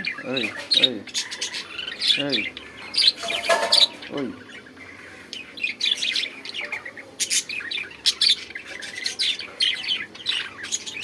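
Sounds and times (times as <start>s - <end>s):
bird chirping: 0.0s - 11.0s.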